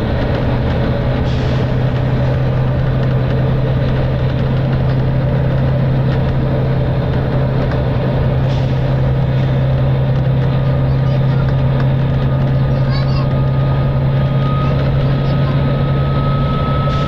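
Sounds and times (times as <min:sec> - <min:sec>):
bus diesel engine droning: 0:00.0 - 0:17.0.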